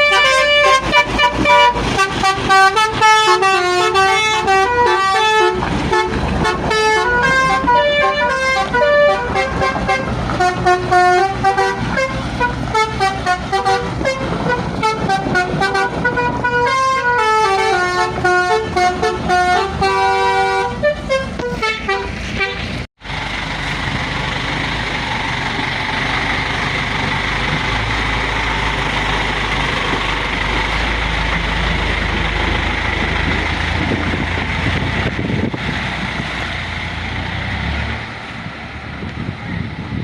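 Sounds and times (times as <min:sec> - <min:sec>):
musical truck horn: 0:00.0 - 0:22.9
diesel engine running hard: 0:00.0 - 0:40.0.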